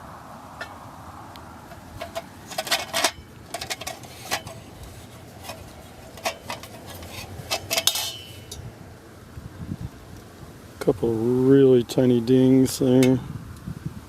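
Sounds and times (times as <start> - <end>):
metal parts clicking and knocking: 1.7 - 8.6.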